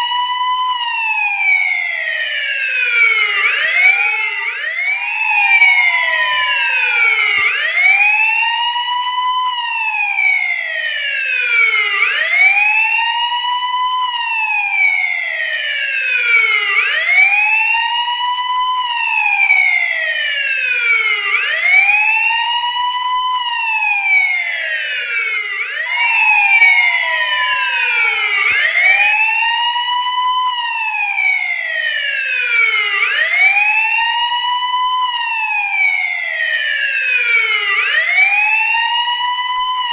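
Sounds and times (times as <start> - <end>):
police siren wailing: 0.0 - 39.9.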